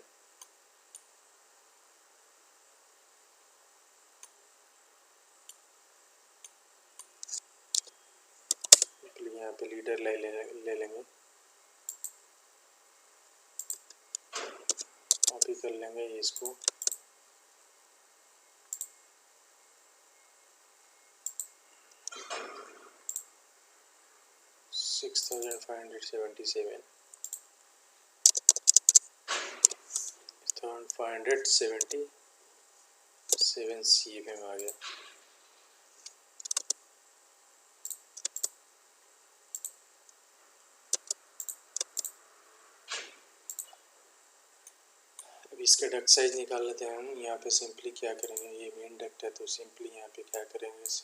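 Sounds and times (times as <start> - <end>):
faint steady hiss: 0.0 - 51.0
computer mouse clicking: 8.5 - 8.9, 11.9 - 12.2, 13.6 - 15.5, 16.4 - 17.0, 18.7 - 18.9, 21.2 - 22.2, 27.2 - 27.4, 28.3 - 29.0, 29.6 - 30.1, 31.8 - 32.0, 34.6 - 34.8, 36.0 - 36.8, 37.8 - 38.5, 39.5 - 39.8, 40.9 - 42.1, 43.5 - 43.8, 48.2 - 48.4.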